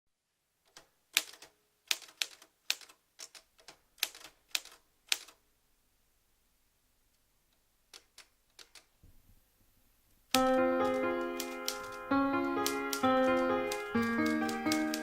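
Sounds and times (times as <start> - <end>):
typewriter keys clicking: 0.7 - 5.4, 7.9 - 8.9, 10.3 - 15.0.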